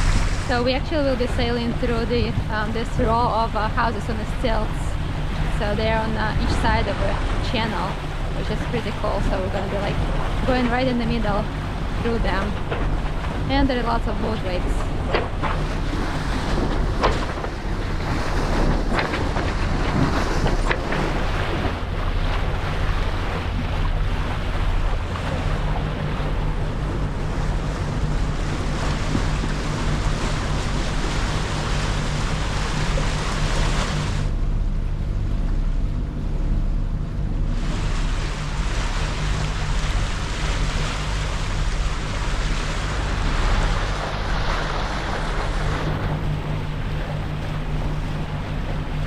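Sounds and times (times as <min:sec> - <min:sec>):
wind on microphone: 0:00.0 - 0:34.4
boat engine humming: 0:00.0 - 0:49.0
water rushing past hulls: 0:00.0 - 0:49.0.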